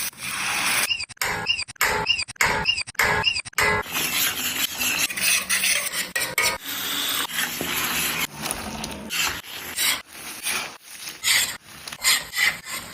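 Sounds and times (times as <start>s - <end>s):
metal spoon scraping a pot: 3.8s - 12.9s.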